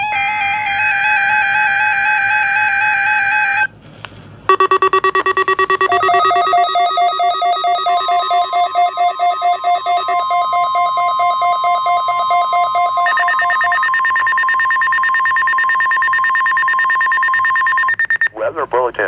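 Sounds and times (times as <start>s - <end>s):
rapid pulsing alert beeps: 4.5s - 18.3s
steady alarm tone: 4.5s - 18.3s.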